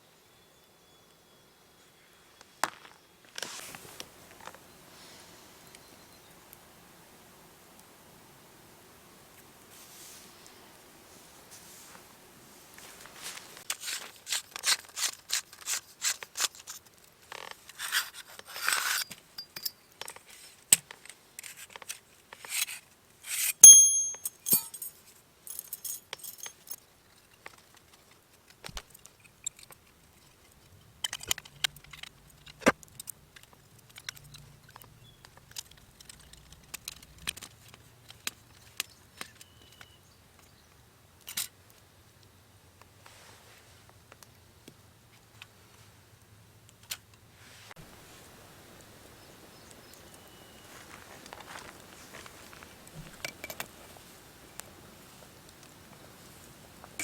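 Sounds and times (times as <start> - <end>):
metal objects clicking and scraping: 23.4 - 24.9
short metallic ring: 23.6 - 24.9.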